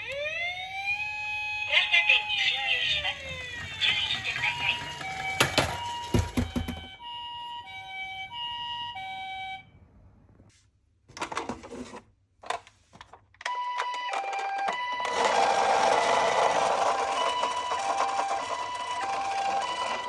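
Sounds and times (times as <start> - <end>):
toy siren two-tone: 1.3 - 9.6, 13.4 - 20.0.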